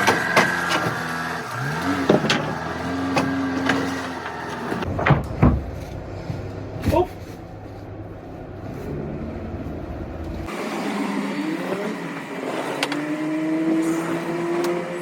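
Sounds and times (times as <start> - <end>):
vehicle engine accelerating: 6.0 - 15.0.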